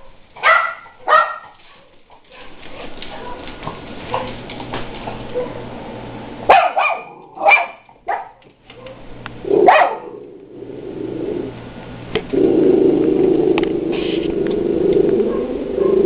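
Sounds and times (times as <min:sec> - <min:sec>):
another dog barking outside: 0:00.0 - 0:04.5, 0:05.2 - 0:05.8, 0:06.4 - 0:10.4, 0:15.0 - 0:16.0
dog barking sharply: 0:00.4 - 0:02.6, 0:06.5 - 0:09.0, 0:09.6 - 0:10.2.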